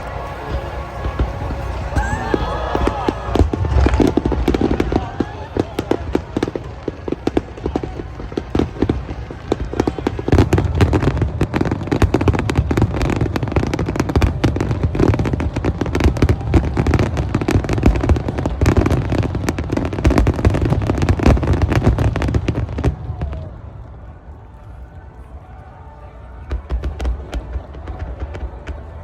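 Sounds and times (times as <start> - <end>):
fireworks bangs and crackles: 0.0 - 29.0.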